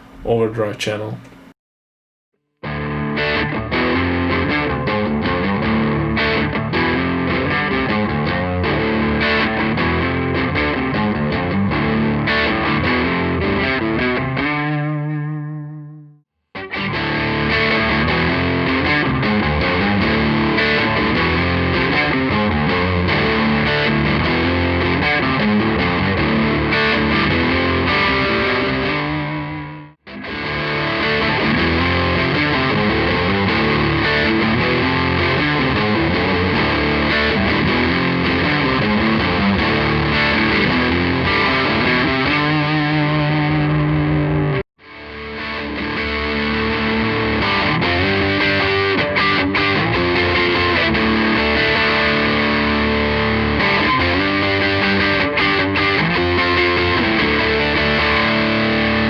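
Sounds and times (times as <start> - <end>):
distorted electric guitar riffs: 2.7 - 16.0, 16.6 - 59.0.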